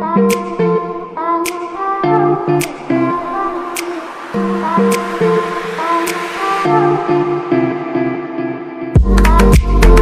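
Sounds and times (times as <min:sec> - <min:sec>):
sustained music tones: 0:00.8 - 0:09.0
heavy beat with deep bass: 0:01.5 - 0:08.1.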